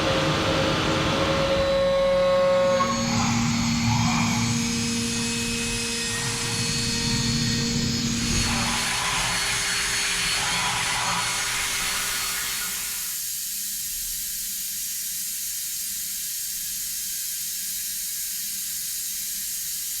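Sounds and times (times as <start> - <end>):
milling machine running: 0.0 - 13.2
hissing spray: 6.1 - 13.2.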